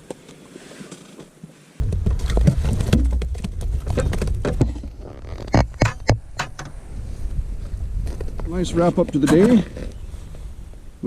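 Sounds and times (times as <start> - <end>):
short knocks and crunches: 1.8 - 6.8
wind rumbling on microphone: 1.8 - 11.0.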